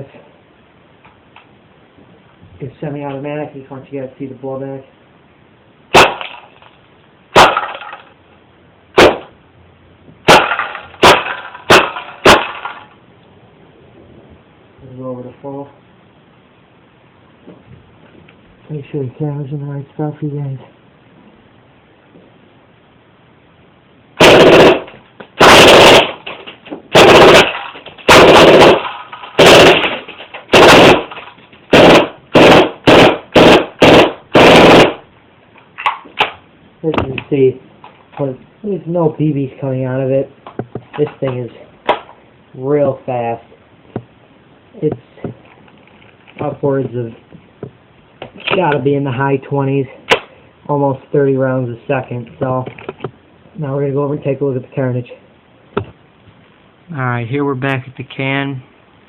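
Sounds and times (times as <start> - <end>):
airsoft gun single shots: 5.9 - 6.5, 7.3 - 8.0, 9.0 - 9.3, 10.2 - 12.8, 24.2 - 26.3, 26.9 - 35.0, 50.1 - 50.3.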